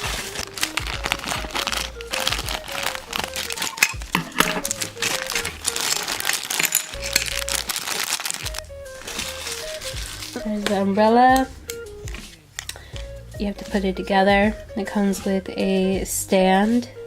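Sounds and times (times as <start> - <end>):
background music with low beat: 0.0 - 6.0, 8.5 - 17.0
plastic packaging crinkling: 0.0 - 10.8.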